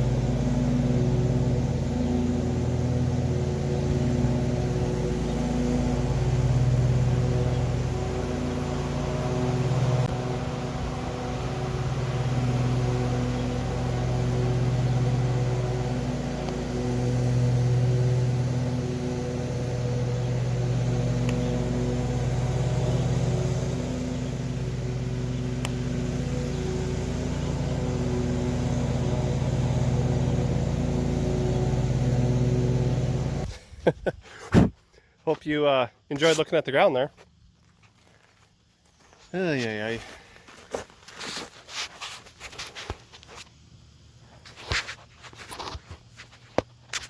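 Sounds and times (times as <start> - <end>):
lawn mower engine running: 0.0 - 33.5.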